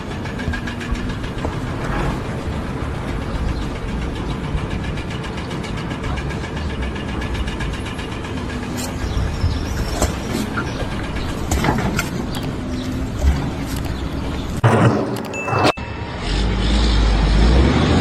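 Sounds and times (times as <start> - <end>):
engine running steadily: 0.0 - 14.6.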